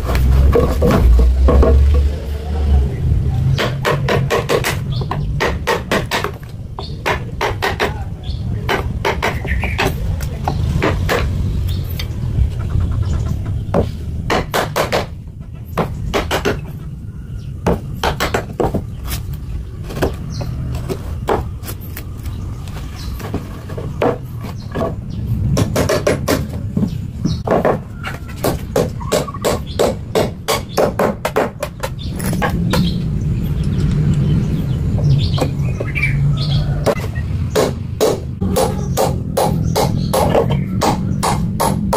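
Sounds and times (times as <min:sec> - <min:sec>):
steady low rumble: 0:00.0 - 0:27.5, 0:32.0 - 0:41.9
hammer strikes: 0:00.2 - 0:02.2, 0:03.6 - 0:08.0, 0:08.6 - 0:11.4, 0:13.7 - 0:15.2, 0:24.0 - 0:27.8, 0:28.4 - 0:32.9, 0:36.8 - 0:41.9
rapid sharp knocks: 0:37.6 - 0:41.9.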